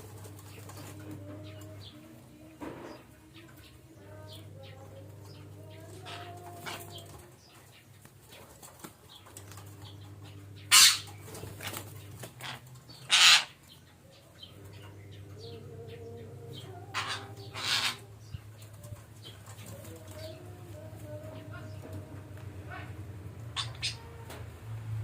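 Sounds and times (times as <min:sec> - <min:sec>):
steady low hum: 0:00.0 - 0:25.0
parakeets squawking harshly: 0:10.6 - 0:13.6, 0:16.9 - 0:18.1, 0:22.6 - 0:24.2.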